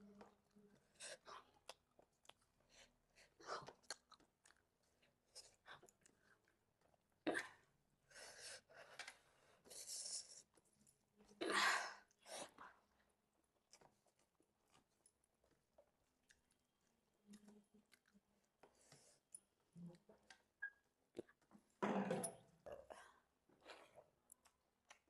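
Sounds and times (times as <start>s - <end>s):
person chewing food: 1.4s - 2.7s, 3.6s - 7.0s, 13.5s - 19.6s.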